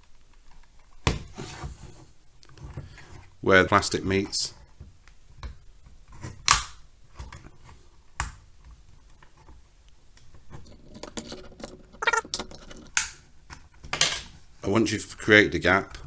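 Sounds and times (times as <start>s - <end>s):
plastic tool scratching plastic: 10.5s - 12.8s.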